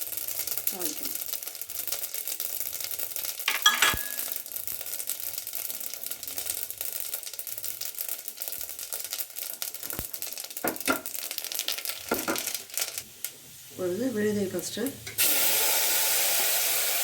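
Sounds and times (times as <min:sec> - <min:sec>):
seeds sizzling and crackling in oil: 0:00.0 - 0:17.0
ringing metal clink: 0:03.5 - 0:04.4.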